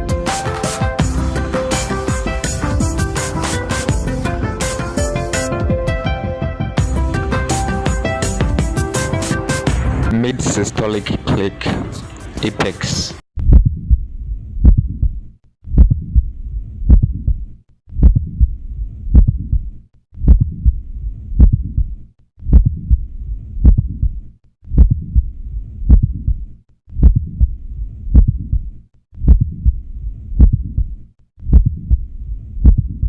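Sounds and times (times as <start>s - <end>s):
heartbeat with click: 13.4s - 33.0s.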